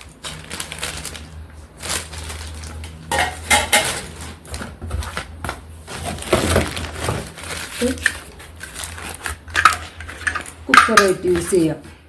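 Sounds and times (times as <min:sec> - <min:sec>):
steel cookware clinking: 0:03.1 - 0:04.1, 0:09.5 - 0:11.6.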